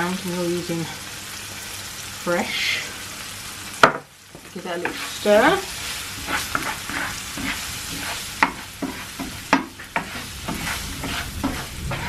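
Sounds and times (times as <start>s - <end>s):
food sizzling in oil: 0.0s - 12.0s
spoon scraping a pan: 4.4s - 12.0s.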